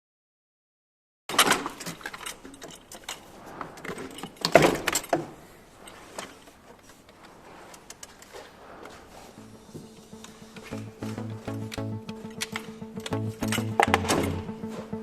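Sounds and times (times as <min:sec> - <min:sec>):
music: 0:09.4 - 0:15.0.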